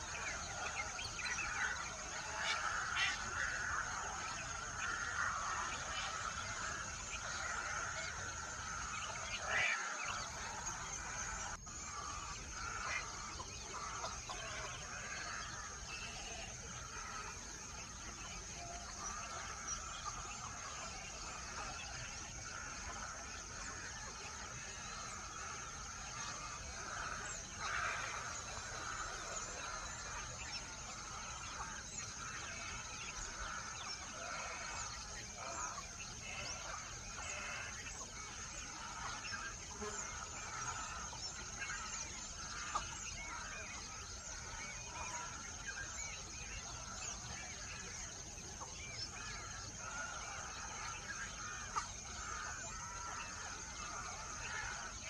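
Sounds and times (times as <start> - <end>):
flock of birds calling: 0.0 - 55.0.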